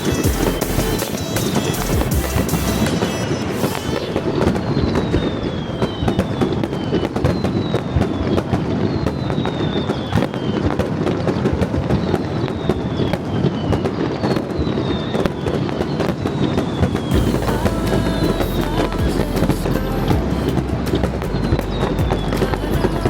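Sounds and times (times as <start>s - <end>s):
falling whistle: 0.0s - 10.7s
fireworks crackling: 0.0s - 23.0s.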